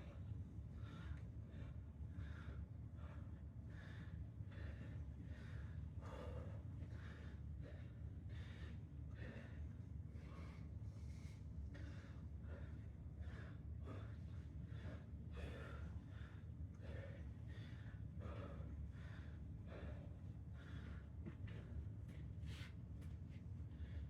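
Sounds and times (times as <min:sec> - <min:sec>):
low room hum: 0:00.0 - 0:24.0
person breathing hard: 0:00.1 - 0:22.8.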